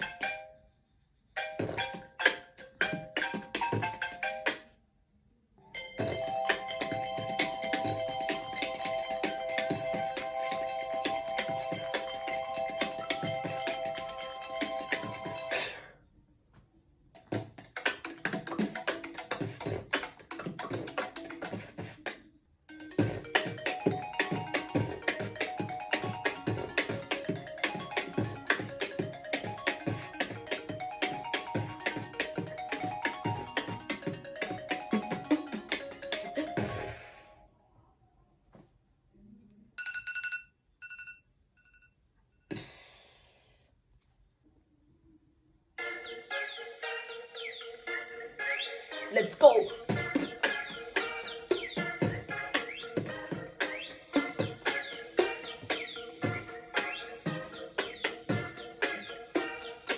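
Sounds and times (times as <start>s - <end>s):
phone ringtone melody: 0.0s - 0.6s, 1.4s - 4.6s, 5.8s - 15.8s, 22.7s - 37.4s, 49.0s - 59.9s
human beatboxing: 1.6s - 4.6s, 6.0s - 15.9s, 17.2s - 22.3s, 23.0s - 37.0s, 42.5s - 43.3s, 49.2s - 59.9s.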